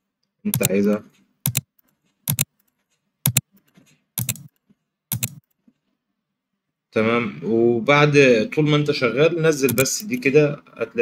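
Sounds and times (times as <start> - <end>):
mouse clicks: 0.5 - 1.7, 2.3 - 2.5, 3.3 - 5.4, 9.7 - 10.2.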